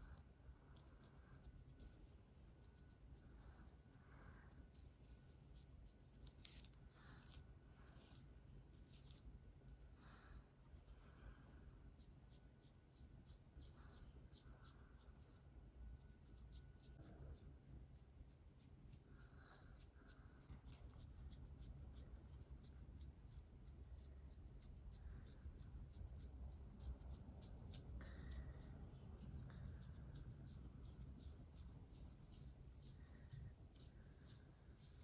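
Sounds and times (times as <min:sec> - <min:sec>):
fingernails scratching scalp: 0:16.1 - 0:35.0.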